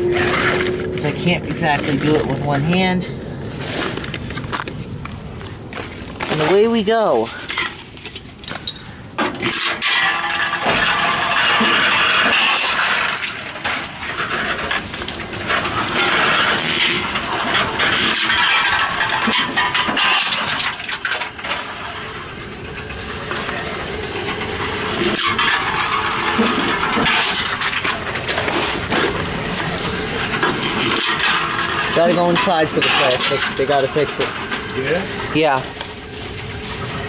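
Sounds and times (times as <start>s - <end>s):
metallic cans clattering: 7.4s - 36.0s.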